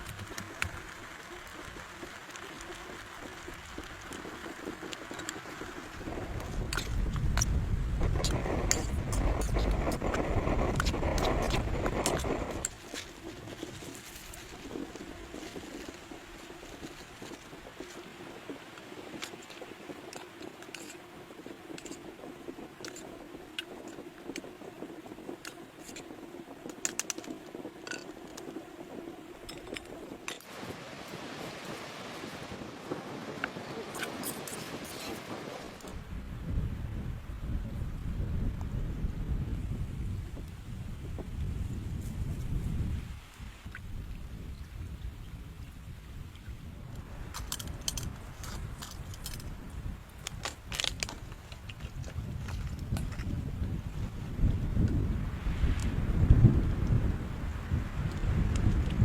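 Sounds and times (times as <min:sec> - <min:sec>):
rain pattering on a tent: 0:00.0 - 0:24.6
wind rumble on microphone: 0:00.0 - 0:59.0.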